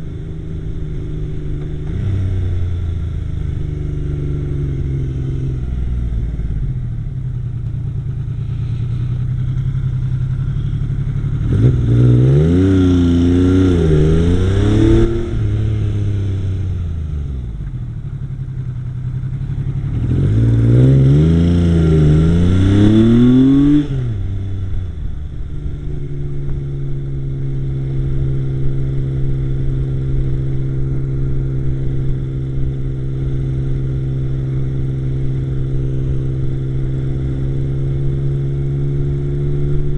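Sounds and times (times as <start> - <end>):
motorcycle engine idling and revving: 0.0 - 39.9.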